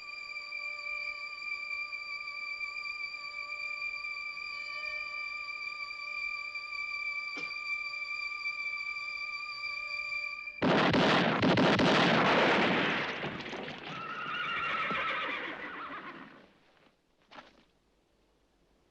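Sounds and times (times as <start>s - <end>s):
rapid revolver gunfire: 10.6s - 13.6s
horse whinnying: 13.6s - 16.5s.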